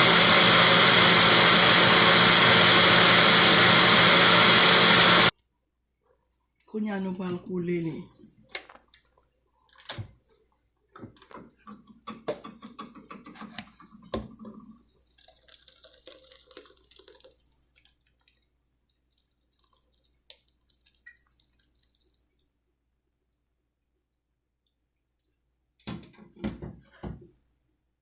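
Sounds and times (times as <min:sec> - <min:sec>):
liquid pouring through strainer: 0:14.5 - 0:23.0.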